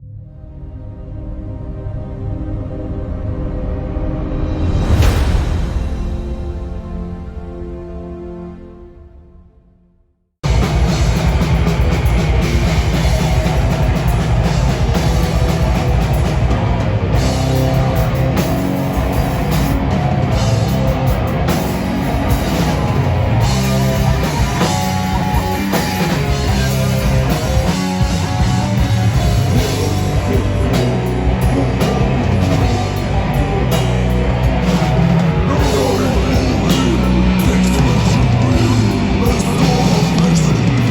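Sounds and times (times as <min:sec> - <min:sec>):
rock band playing live: 0:10.4 - 0:40.9.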